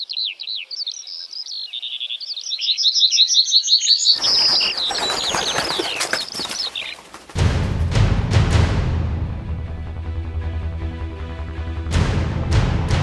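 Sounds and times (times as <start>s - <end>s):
small birds chirping: 0.0s - 7.4s
loud rough noise: 7.4s - 13.0s.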